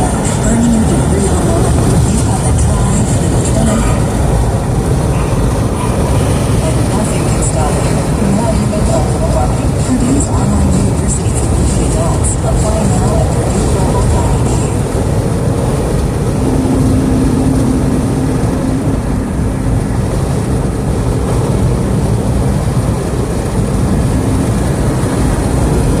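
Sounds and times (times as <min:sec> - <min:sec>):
car road and wind noise: 0:00.0 - 0:26.0
faint hum: 0:16.3 - 0:26.0.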